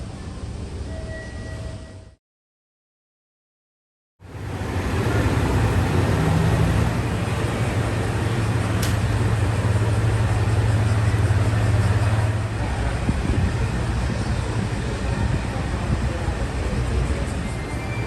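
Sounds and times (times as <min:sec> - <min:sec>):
vehicle running hum and hiss: 0:04.2 - 0:12.7.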